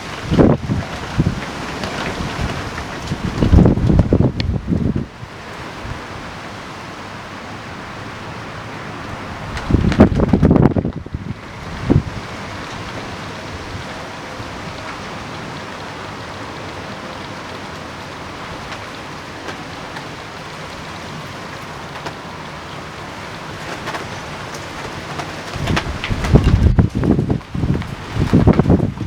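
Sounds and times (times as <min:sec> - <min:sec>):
wind buffeting microphone: 0:00.0 - 0:06.4, 0:09.0 - 0:15.7, 0:23.5 - 0:29.0
steady rain hiss: 0:00.0 - 0:29.0.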